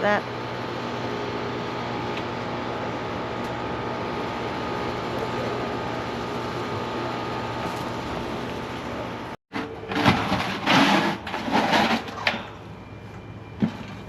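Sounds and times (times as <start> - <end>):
steady mechanical hum: 0.0 - 14.0.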